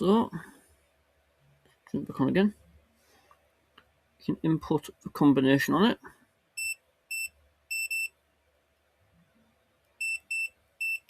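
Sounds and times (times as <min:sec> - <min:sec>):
keypad beeping: 0:06.6 - 0:08.1, 0:10.0 - 0:11.0.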